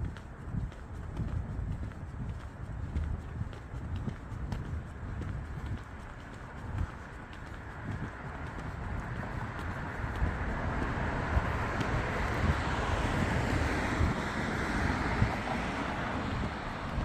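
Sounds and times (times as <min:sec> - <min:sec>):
wind rumbling on microphone: 0:00.0 - 0:17.0
road vehicle passing: 0:07.2 - 0:17.0.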